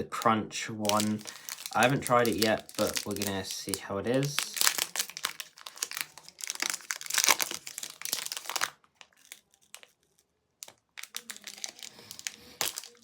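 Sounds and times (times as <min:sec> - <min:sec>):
wrapper crinkling and tearing: 0:00.2 - 0:13.0.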